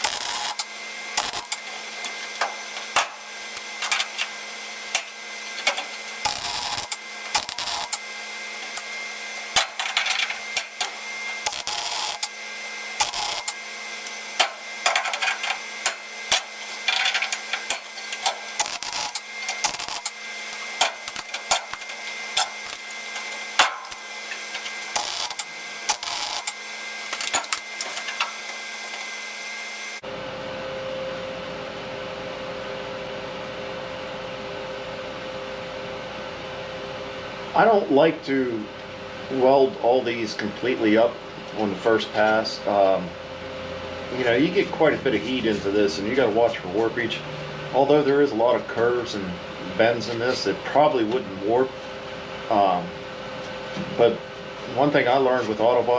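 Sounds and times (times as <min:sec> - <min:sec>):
steady low hum: 0:00.0 - 0:30.0
welder crackling: 0:00.0 - 0:30.0.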